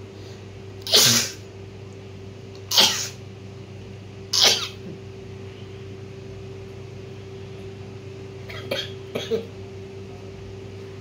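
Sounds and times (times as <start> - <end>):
woman sneezing: 0.8 - 1.4, 2.7 - 3.2.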